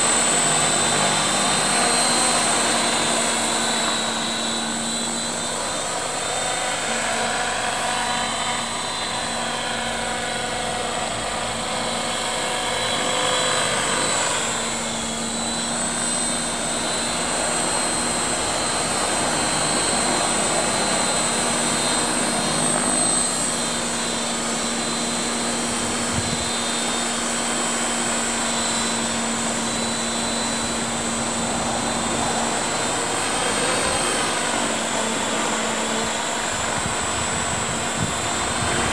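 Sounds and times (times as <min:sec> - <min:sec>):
helicopter rotor hum and motor whine: 0:00.0 - 0:38.9
wind noise on microphone: 0:25.7 - 0:26.7, 0:35.8 - 0:38.9.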